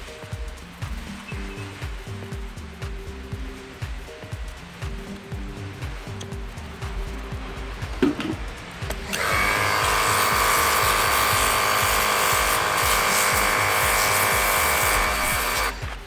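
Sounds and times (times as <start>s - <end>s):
water spray hiss: 0.0s - 16.0s
pressure washer motor whine: 8.9s - 16.0s.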